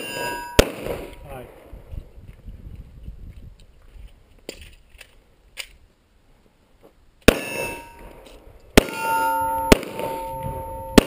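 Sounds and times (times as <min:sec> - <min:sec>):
steel target clanging: 0:00.0 - 0:00.9, 0:07.3 - 0:08.2, 0:08.8 - 0:11.0
pistol shots: 0:00.0 - 0:01.2, 0:07.3 - 0:08.2, 0:08.8 - 0:11.0.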